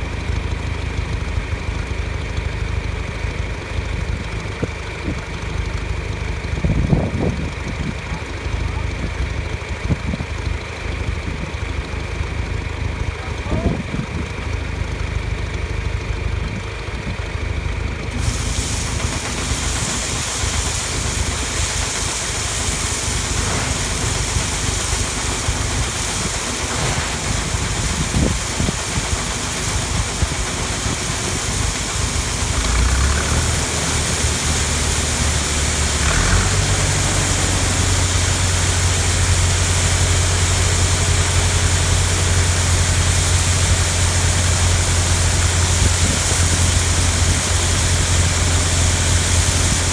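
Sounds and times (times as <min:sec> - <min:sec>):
machine engine running: 0:17.8 - 0:49.9
hiss: 0:18.1 - 0:49.9.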